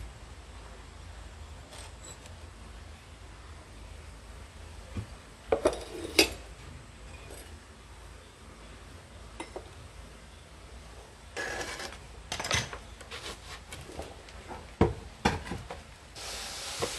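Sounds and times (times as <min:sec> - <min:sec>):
pottery clinking and knocking: 0:09.4 - 0:09.7.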